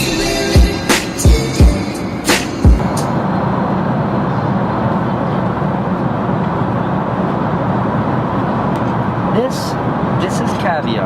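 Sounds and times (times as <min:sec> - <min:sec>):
hip-hop kick drum beats: 0:00.0 - 0:03.0
airliner cabin drone: 0:00.0 - 0:11.0.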